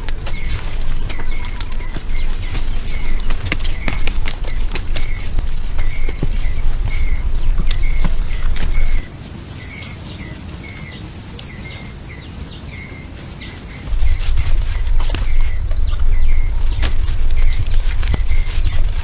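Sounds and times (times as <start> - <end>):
loud low rumble: 0.0 - 9.2, 13.9 - 19.0
bird chirping: 0.0 - 19.0.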